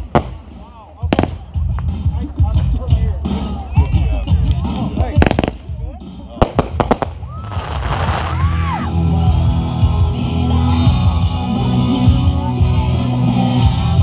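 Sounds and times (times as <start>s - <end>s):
music with singing and bass: 0.0s - 14.0s
crowd cheering and whooping: 7.2s - 9.1s.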